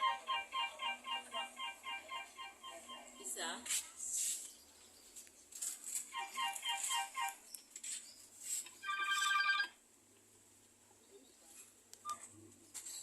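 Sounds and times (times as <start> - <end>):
phone ringtone beeping: 0.0 - 3.1, 8.8 - 9.8
high pulsing phone tone: 8.8 - 9.8.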